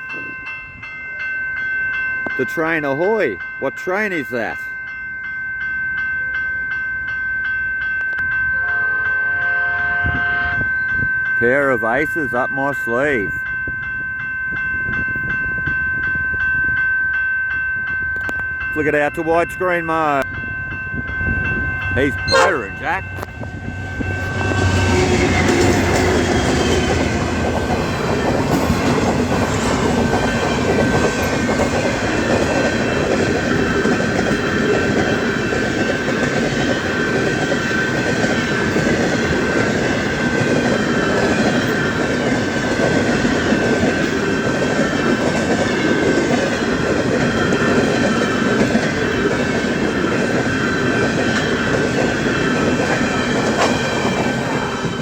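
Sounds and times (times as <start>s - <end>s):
steady high tone: 0.0s - 48.4s
train wheels clickety-clack: 24.3s - 55.0s.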